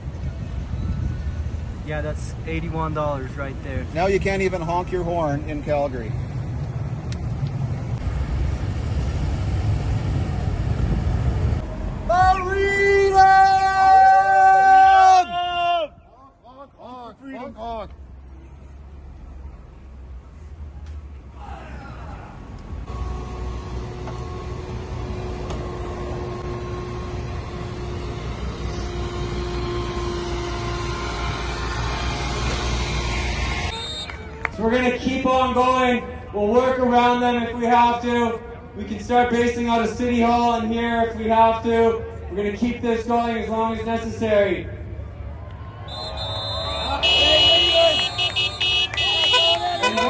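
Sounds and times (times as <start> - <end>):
low rumble of vehicles: 0.0 - 50.0
vehicle horns honking: 22.9 - 34.6, 45.9 - 50.0.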